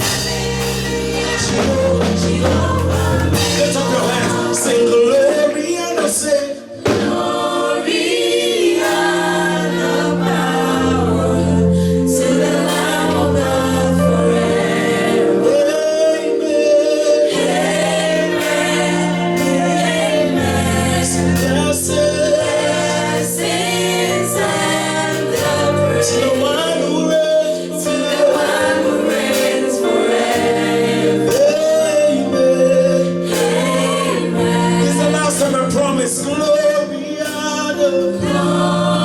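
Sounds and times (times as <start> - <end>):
band accompaniment with bass: 0.0 - 39.0
group of voices singing: 0.0 - 39.0.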